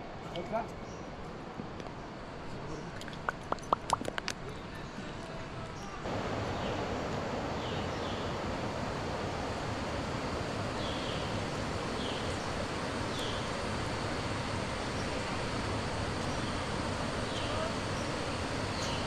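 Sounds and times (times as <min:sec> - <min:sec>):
waterfall rushing: 0:06.0 - 0:19.0.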